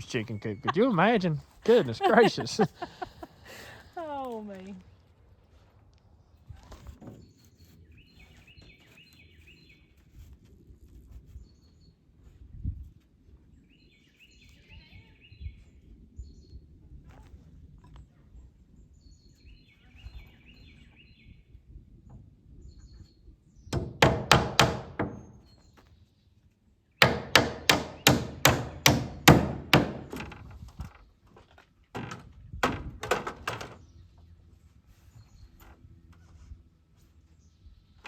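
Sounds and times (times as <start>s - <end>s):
hammer driving nails into wood: 23.7s - 25.4s, 27.0s - 30.4s.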